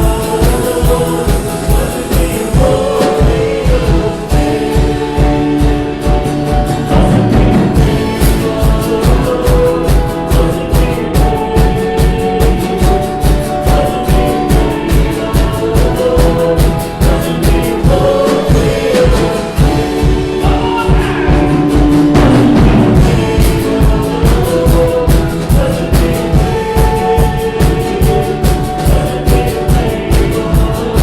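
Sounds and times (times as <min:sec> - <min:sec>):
voices singing: 0:00.0 - 0:31.0
worship music with driving beat: 0:00.0 - 0:31.0.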